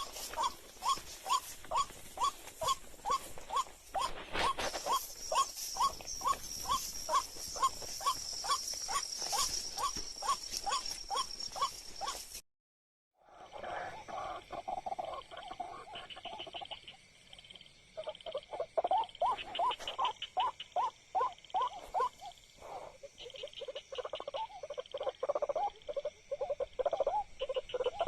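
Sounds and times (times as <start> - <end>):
waterhen calling: 0.0 - 12.2.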